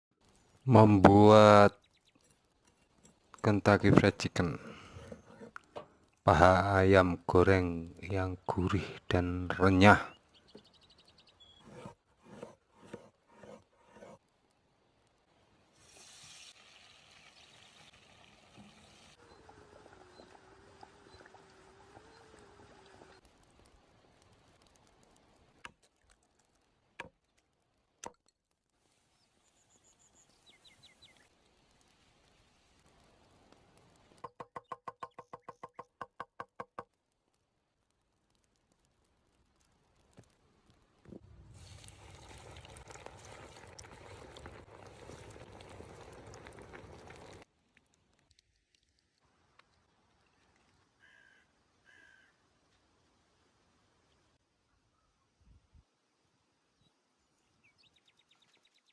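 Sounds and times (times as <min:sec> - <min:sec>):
chicken deep-frying in oil: 0:15.2 - 0:27.4, 0:41.1 - 0:50.3
crow cawing: 0:51.0 - 0:52.4.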